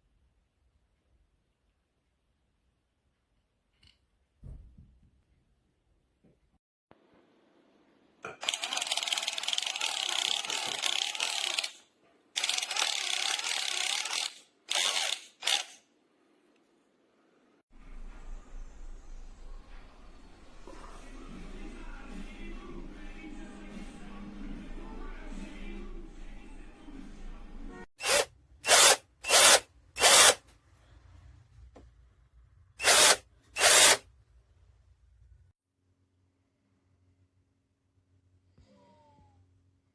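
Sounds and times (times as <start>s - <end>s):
power drill ratcheting clicks: 8.4s - 11.8s, 12.4s - 15.8s, 28.0s - 30.4s, 32.8s - 34.0s.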